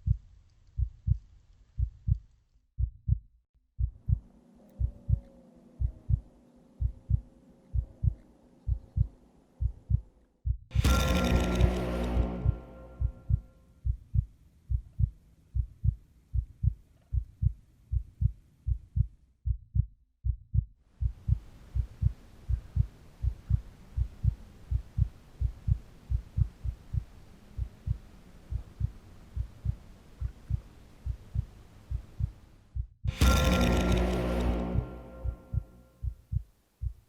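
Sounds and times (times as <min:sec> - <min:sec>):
heartbeat thumps: 0:00.0 - 0:00.2, 0:00.8 - 0:02.2, 0:02.8 - 0:03.2, 0:03.8 - 0:37.0.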